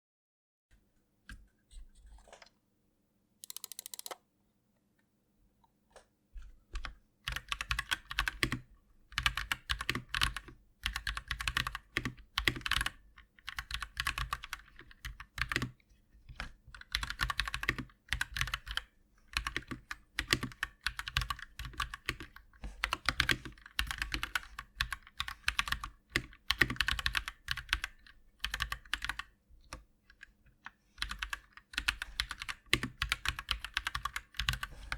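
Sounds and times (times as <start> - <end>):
mechanical keyboard key clacks: 3.4 - 4.2.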